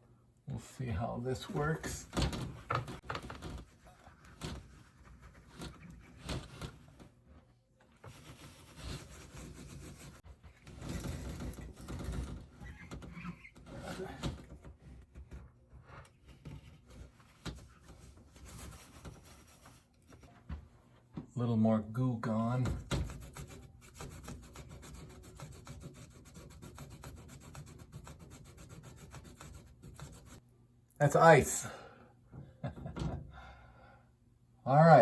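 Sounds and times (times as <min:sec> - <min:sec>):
rubbing and scraping: 0:01.0 - 0:20.5, 0:22.4 - 0:30.4.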